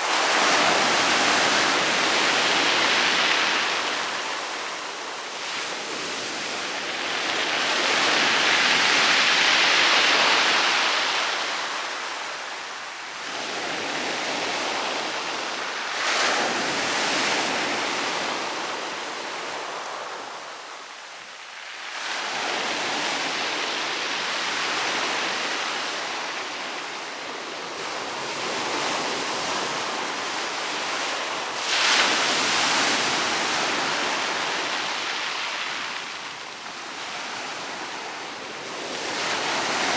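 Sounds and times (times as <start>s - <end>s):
waves breaking on pebble beach: 28.3s - 36.5s.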